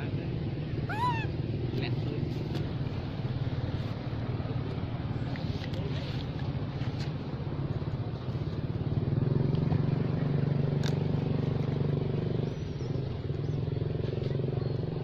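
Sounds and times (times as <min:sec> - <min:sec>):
motor engine running: 0:00.0 - 0:15.0.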